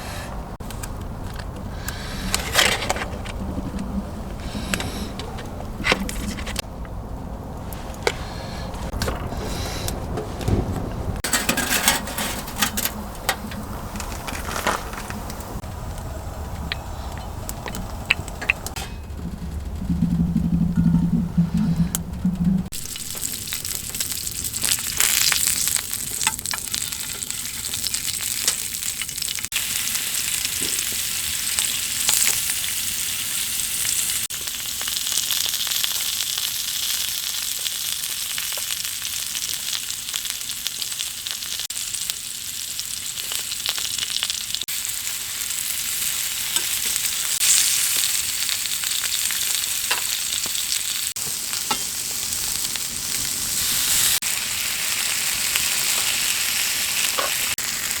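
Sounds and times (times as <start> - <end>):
food sizzling in a frying pan: 22.7 - 58.0.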